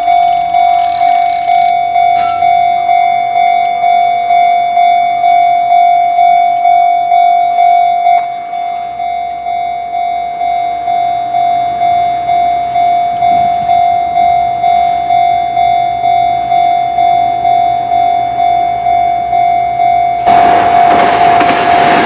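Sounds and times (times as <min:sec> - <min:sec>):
railroad crossing bell ringing: 0:00.0 - 0:22.0
passing train rushing: 0:20.2 - 0:22.0.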